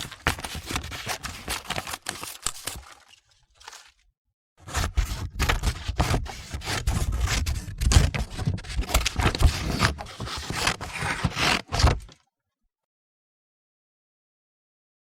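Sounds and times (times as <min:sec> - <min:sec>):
scissors cutting paper: 0:00.0 - 0:03.9, 0:04.6 - 0:12.2.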